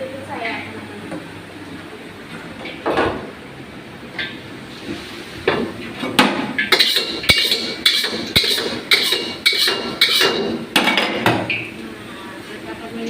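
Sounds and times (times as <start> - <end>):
utensils knocking on metal cookware: 6.2 - 11.6.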